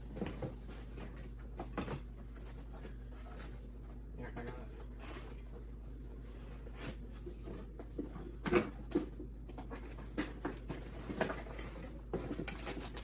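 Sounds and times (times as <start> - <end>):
packaging rustling: 11.2 - 13.0.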